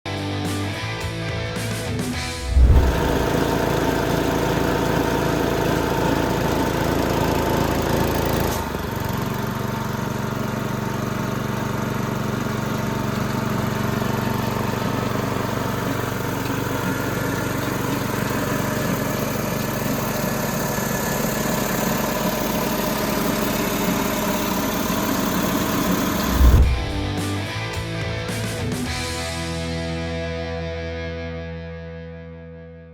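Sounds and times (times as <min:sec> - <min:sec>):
small gas engine running: 0:02.2 - 0:27.4.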